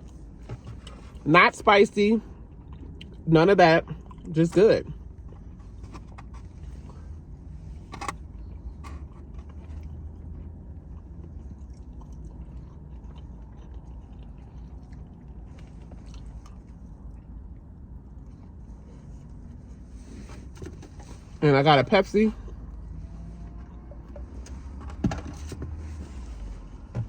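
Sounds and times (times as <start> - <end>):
person chewing food: 2.4 - 3.2, 3.9 - 4.3, 8.0 - 19.8.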